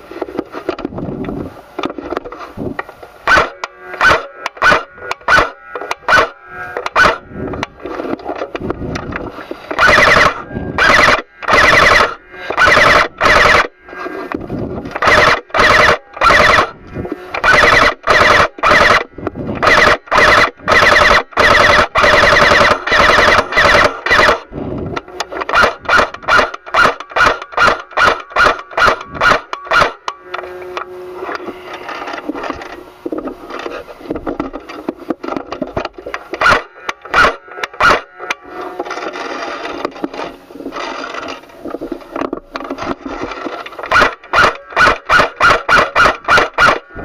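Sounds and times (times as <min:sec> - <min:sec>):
airsoft gun firing: 0:03.3 - 0:06.3, 0:09.8 - 0:13.7, 0:15.0 - 0:16.7, 0:17.4 - 0:19.0, 0:19.6 - 0:24.5, 0:25.5 - 0:30.0, 0:43.9 - 0:46.8.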